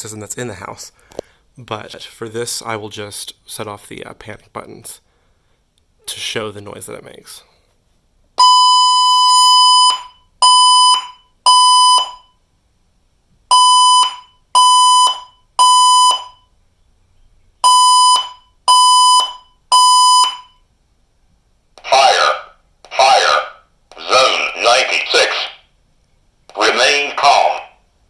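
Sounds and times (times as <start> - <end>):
alarm beeps: 8.4 - 12.4, 13.5 - 16.5, 17.6 - 20.6.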